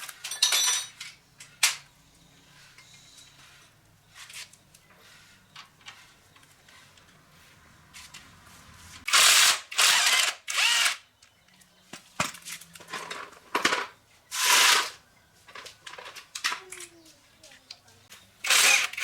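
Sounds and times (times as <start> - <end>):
power tool bursts: 9.1 - 11.0, 18.4 - 19.0.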